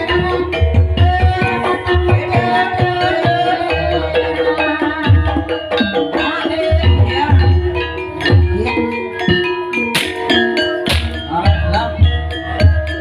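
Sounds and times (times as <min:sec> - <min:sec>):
ringing metallophone notes: 0:00.0 - 0:13.0.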